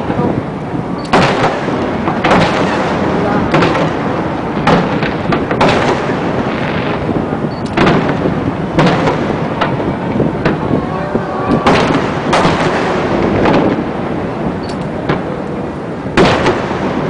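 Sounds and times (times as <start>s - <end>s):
fireworks booming: 0.0s - 17.0s
fireworks rumble and crackle: 0.0s - 17.0s.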